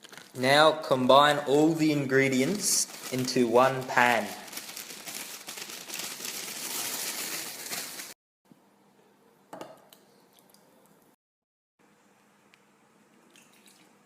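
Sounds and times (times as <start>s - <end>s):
ingredients pouring rustling hiss: 2.5s - 8.2s.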